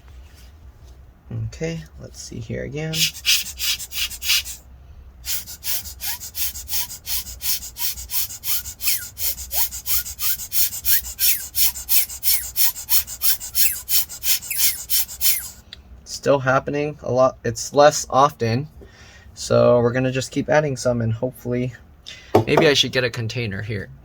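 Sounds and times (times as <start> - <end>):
fan bearing squeaking: 5.3 - 15.6
fan scraping strokes: 5.3 - 15.6.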